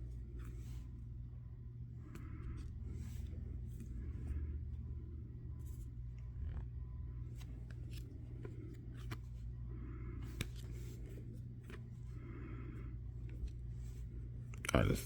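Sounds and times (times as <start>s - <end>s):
cards rustling: 0.0s - 1.2s, 5.6s - 12.4s, 13.0s - 15.0s
low steady hum: 0.0s - 15.0s.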